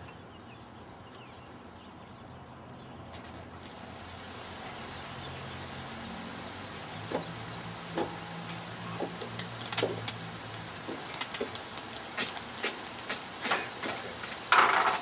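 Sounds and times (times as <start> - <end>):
hand tools clicking and knocking: 10.8 - 15.0.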